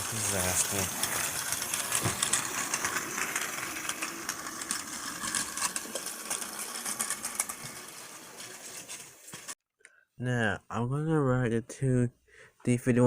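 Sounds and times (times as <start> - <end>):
small motor whirring: 0.0 - 9.6
toy train wheels clattering: 0.0 - 9.6.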